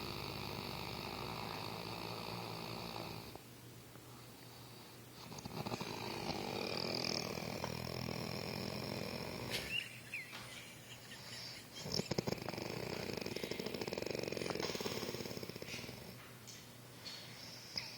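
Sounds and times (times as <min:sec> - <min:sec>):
snoring: 0:00.0 - 0:03.4, 0:05.2 - 0:09.7, 0:11.8 - 0:16.2
rattling snort: 0:05.2 - 0:09.7, 0:11.8 - 0:16.2.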